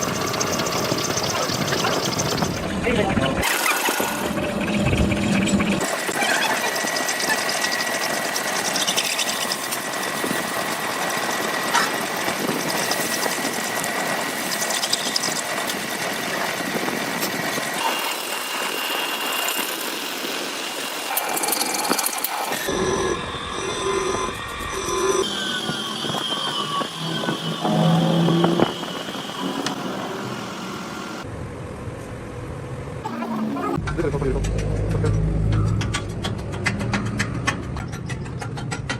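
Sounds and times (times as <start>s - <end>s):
high-pitched machining whine: 0.0s - 31.3s
metal lathe cutting thread: 3.4s - 22.7s, 25.2s - 31.2s.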